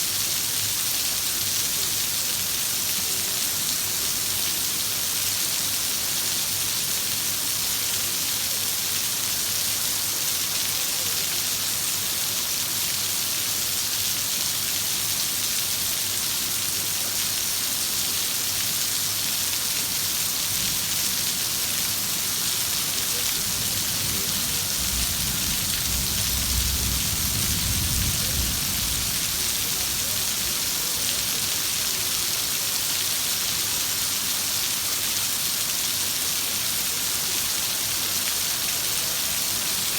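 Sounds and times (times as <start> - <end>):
heavy rain falling: 0.0 - 39.9
distant thunder rumble: 24.2 - 29.6.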